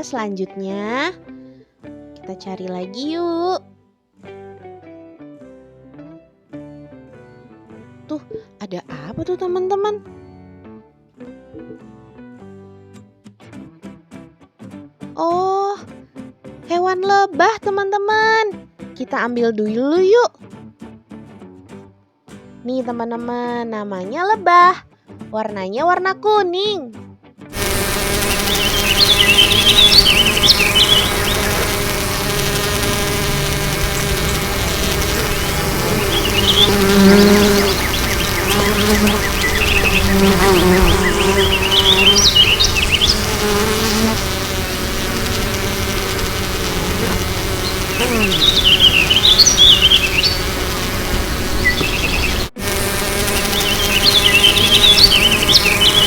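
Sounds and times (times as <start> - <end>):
warbling high chirps: 27.6 - 51.0
bee buzzing: 27.6 - 56.0.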